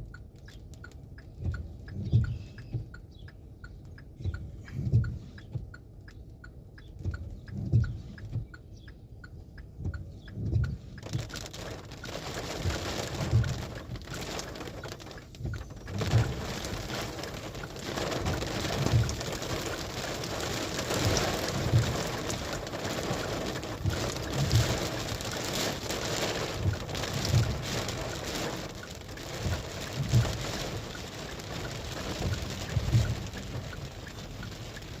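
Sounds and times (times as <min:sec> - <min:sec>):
heavy rain: 0:11.0 - 0:35.0.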